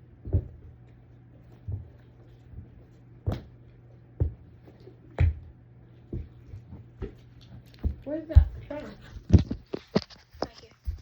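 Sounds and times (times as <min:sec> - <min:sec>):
dull thumps and knocks: 0:00.2 - 0:00.8, 0:01.5 - 0:03.6, 0:04.2 - 0:05.5.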